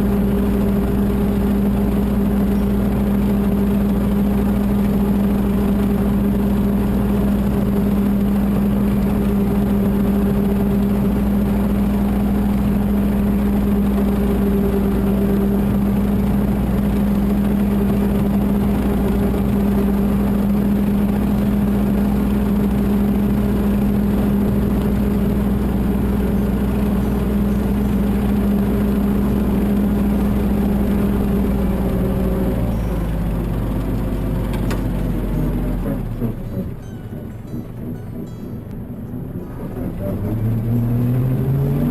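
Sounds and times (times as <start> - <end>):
tractor diesel engine running: 0.0 - 41.9.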